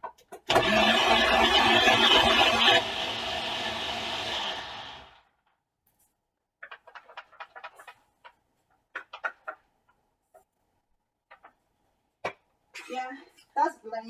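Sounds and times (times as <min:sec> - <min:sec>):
blender motor running: 0:00.5 - 0:05.2.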